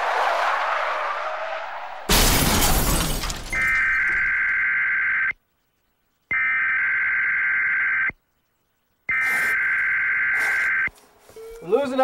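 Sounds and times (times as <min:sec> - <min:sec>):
crash: 0:01.2 - 0:04.3
electronic alarm beeping: 0:06.3 - 0:08.2, 0:09.1 - 0:11.8.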